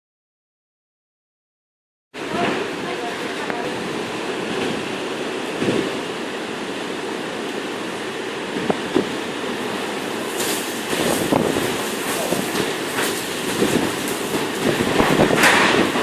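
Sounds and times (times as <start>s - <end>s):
strong wind rushing: 3.7s - 16.0s.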